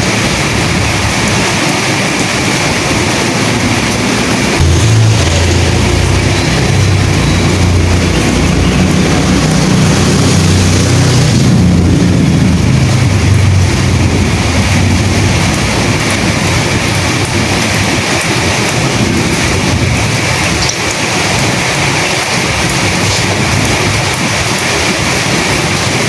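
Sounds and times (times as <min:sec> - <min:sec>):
heavy rain falling: 0:00.0 - 0:26.0
deep low rumble: 0:03.4 - 0:17.6.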